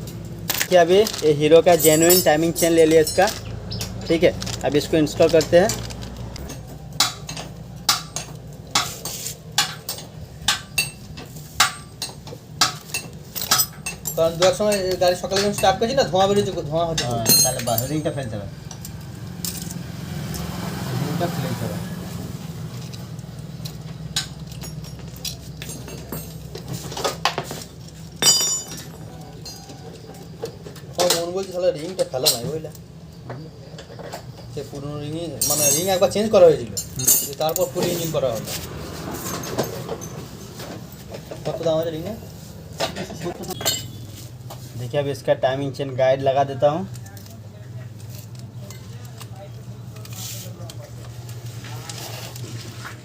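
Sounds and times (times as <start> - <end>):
metal chain links clinking: 1.0 - 6.8, 12.9 - 19.8, 23.8 - 26.8, 28.0 - 30.0, 35.4 - 38.5, 39.1 - 41.6, 43.5 - 44.1.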